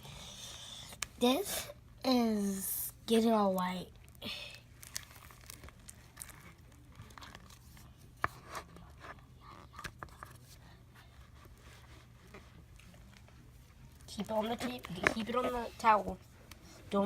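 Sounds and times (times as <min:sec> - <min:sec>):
sticky slime crackling: 0:03.5 - 0:08.0.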